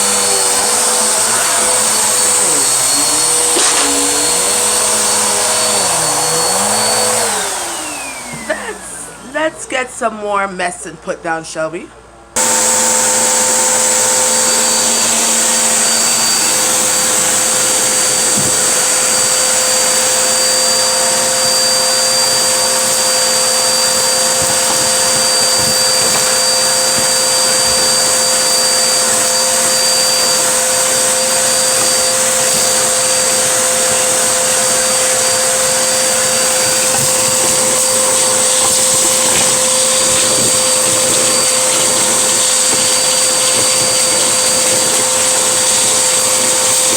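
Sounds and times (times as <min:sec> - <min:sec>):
vacuum cleaner running: 0:00.0 - 0:09.8, 0:12.4 - 0:46.9.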